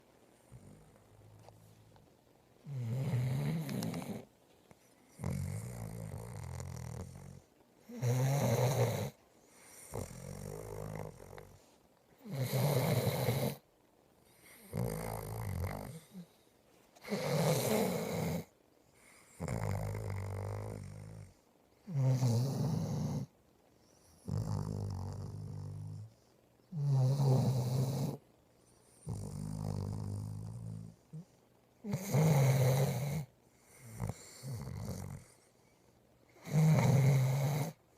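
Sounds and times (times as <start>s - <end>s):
person snoring: 2.6s - 4.3s, 5.2s - 11.6s, 12.2s - 13.6s, 14.6s - 16.3s, 17.0s - 18.5s, 21.9s - 23.3s, 24.2s - 26.1s, 26.7s - 28.2s, 29.0s - 31.2s, 31.8s - 35.3s, 36.4s - 37.8s.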